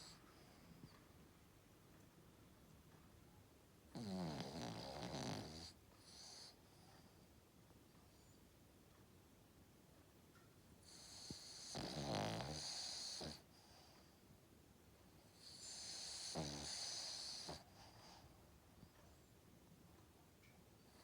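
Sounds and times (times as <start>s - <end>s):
dog snoring: 3.9s - 7.1s, 10.8s - 13.9s, 15.3s - 18.2s.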